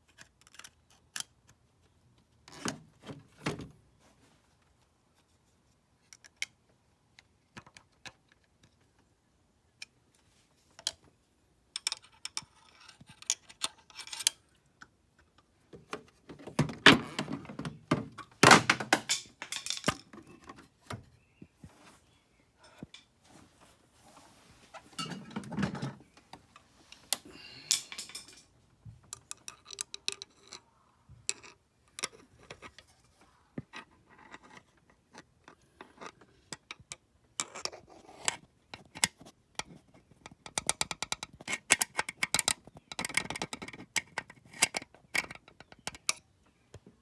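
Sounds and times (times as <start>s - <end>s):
knocks and clicks of handling: 11.8s - 21.8s, 24.9s - 30.6s.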